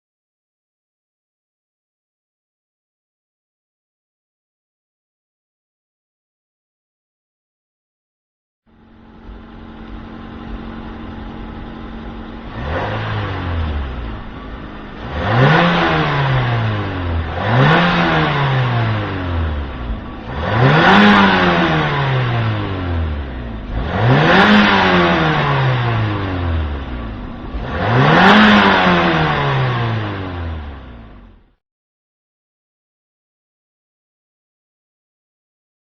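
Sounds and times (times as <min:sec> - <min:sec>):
car engine idling and revving: 0:08.7 - 0:31.6.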